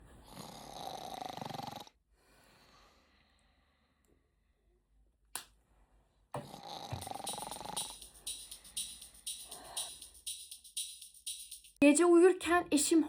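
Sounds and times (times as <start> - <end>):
person snoring loudly: 0.3 - 2.0, 6.4 - 8.0.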